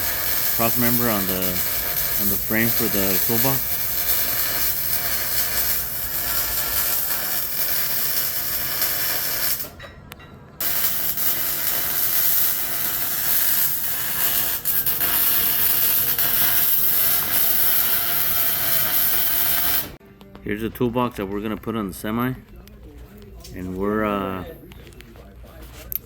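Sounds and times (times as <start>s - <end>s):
welding arc crackling and hissing: 0.0s - 9.8s, 10.6s - 20.0s.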